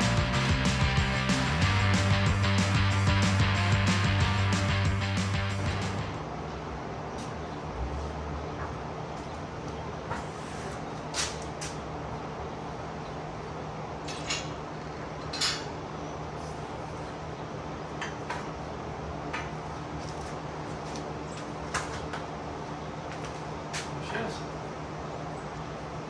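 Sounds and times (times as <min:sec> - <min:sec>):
steady low hum: 0:00.0 - 0:08.6.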